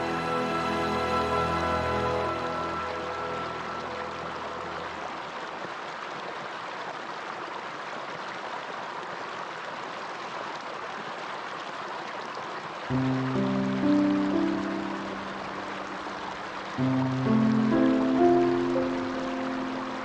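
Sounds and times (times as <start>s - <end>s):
music: 0.0s - 5.2s, 12.9s - 20.0s
running water rushing: 0.0s - 20.0s.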